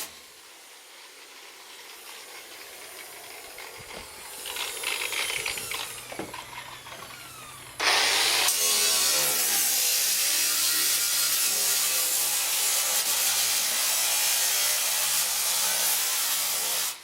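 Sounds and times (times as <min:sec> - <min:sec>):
angle grinder cutting sheet metal: 0:00.0 - 0:17.0.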